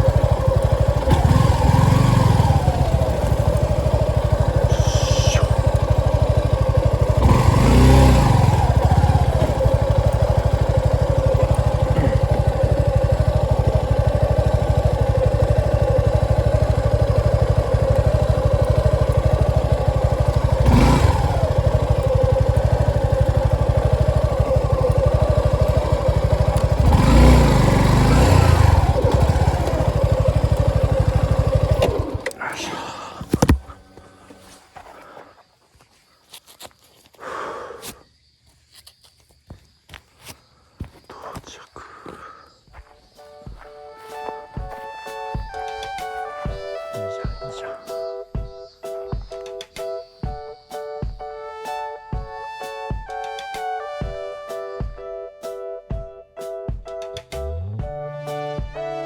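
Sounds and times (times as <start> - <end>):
motorcycle engine running: 0.0 - 35.2, 44.4 - 47.6.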